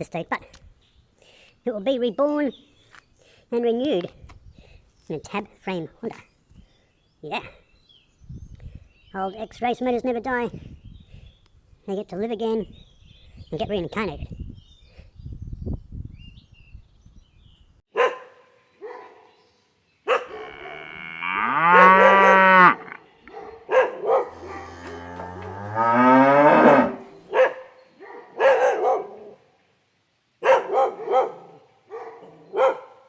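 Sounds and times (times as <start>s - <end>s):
long rising animal calls: 24.3s - 27.2s.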